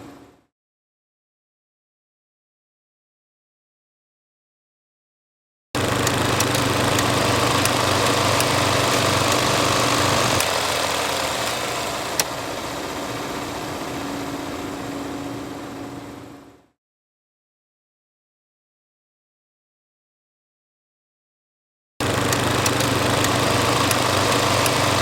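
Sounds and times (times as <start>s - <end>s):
film projector whirring and rattling: 5.8s - 16.2s, 22.0s - 25.0s
sharp click: 6.0s - 10.6s, 22.2s - 25.0s.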